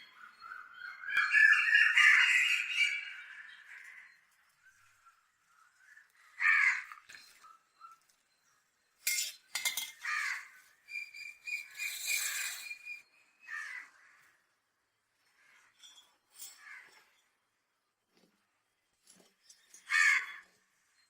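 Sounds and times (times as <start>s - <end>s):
bird harsh calls: 0.0s - 5.2s, 9.6s - 14.3s
sharp clinks: 9.0s - 10.0s.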